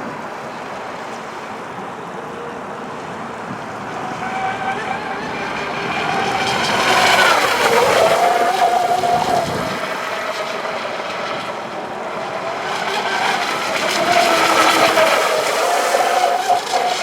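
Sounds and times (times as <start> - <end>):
rush of water: 0.0 - 17.0
electric motor whining: 3.4 - 17.0.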